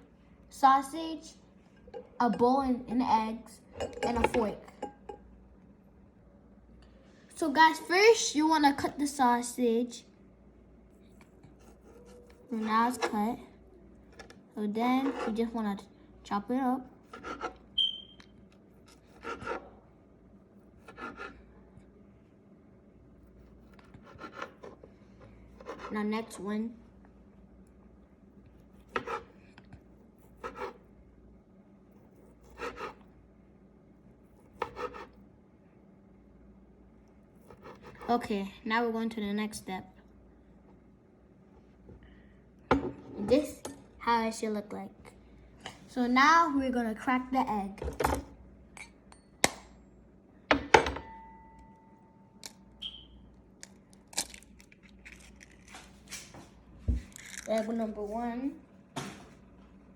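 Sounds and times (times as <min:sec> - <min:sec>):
utensil chopping sausage: 0:17.0 - 0:17.7, 0:20.8 - 0:21.4, 0:34.5 - 0:35.1
bowl ringing: 0:51.0 - 0:52.5.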